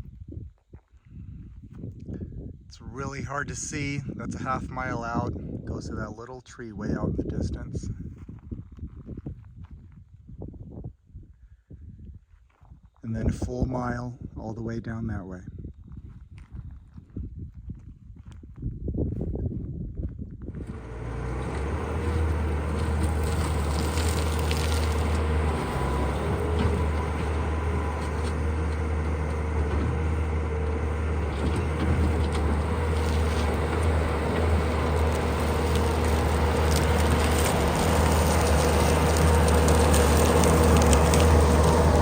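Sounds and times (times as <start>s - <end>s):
skid steer engine droning: 20.5s - 42.0s
clicks and crackles: 21.1s - 30.1s, 30.7s - 42.0s.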